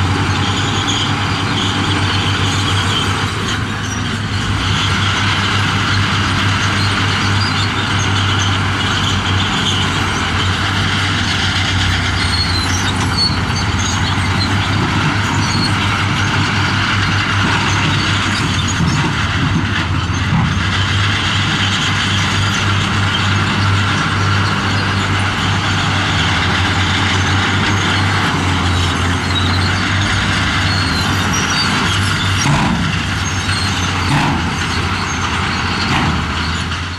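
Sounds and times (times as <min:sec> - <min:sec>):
diesel machinery engine drone: 0:00.0 - 0:36.9.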